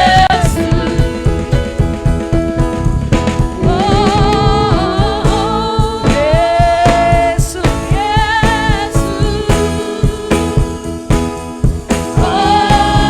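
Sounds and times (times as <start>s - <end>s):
drum kit: 0.0s - 13.0s
sustained held chords: 0.6s - 6.4s.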